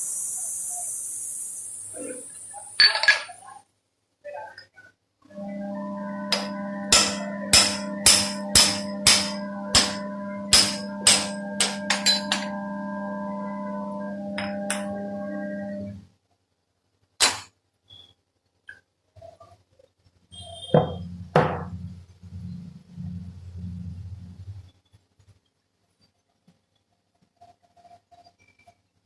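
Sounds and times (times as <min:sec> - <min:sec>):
machine motor humming: 0:05.3 - 0:16.0
hammer striking metal: 0:05.4 - 0:16.0
sharp knock: 0:06.3 - 0:12.5.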